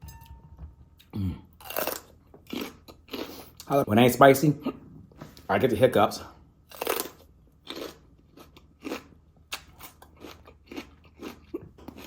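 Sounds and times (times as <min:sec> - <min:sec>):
chewing wet crunches: 0:06.7 - 0:12.0.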